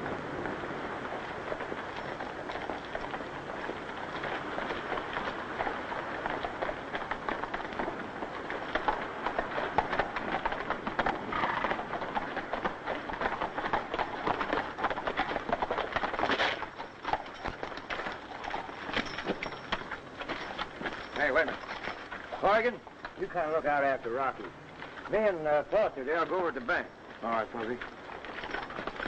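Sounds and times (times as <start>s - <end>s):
horses galloping: 0.0s - 29.0s.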